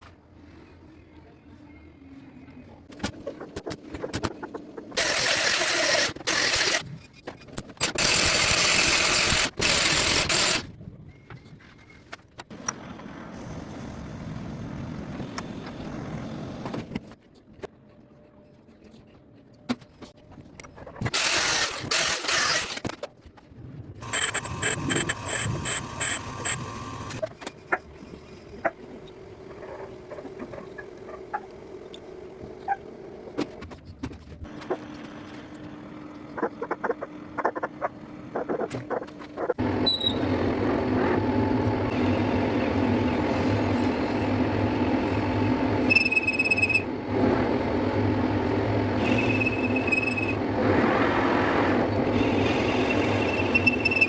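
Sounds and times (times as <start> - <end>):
rapid mechanical rhythm: 3.0 - 6.9, 7.5 - 10.7, 21.0 - 23.0, 24.0 - 54.0
metal cutting or grinding: 4.9 - 6.9, 7.8 - 10.7, 21.1 - 22.9, 24.0 - 27.3
machine running steadily: 24.0 - 33.8, 34.5 - 54.0.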